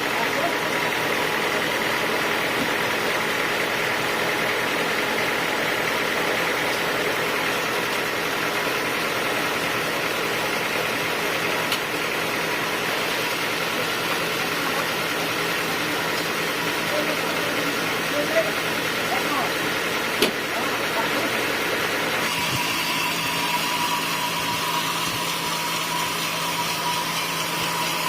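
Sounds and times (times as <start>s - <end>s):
sawmill machinery drone: 0.0s - 28.0s.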